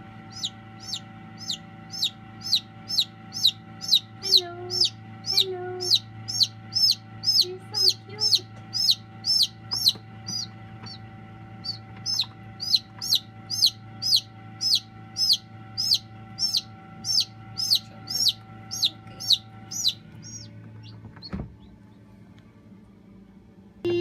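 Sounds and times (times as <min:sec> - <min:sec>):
chick peeping: 0:00.0 - 0:11.0, 0:11.6 - 0:22.1
low hum: 0:00.0 - 0:24.0.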